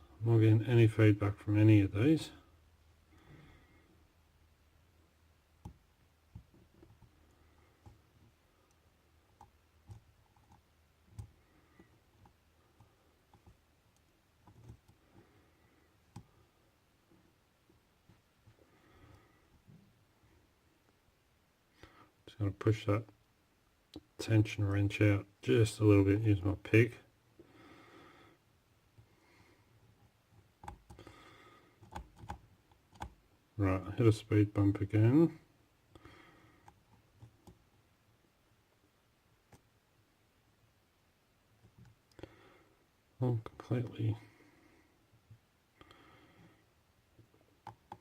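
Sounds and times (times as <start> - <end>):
soft breath: 3.0 - 4.2, 11.3 - 13.4, 15.0 - 17.3, 18.1 - 20.6, 27.4 - 30.1, 30.9 - 32.0, 35.9 - 37.0, 42.1 - 43.0, 44.1 - 47.4.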